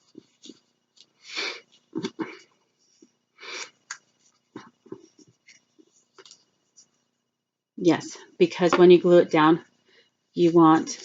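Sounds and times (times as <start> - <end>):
paper rustling and scraping: 0.0 - 2.1.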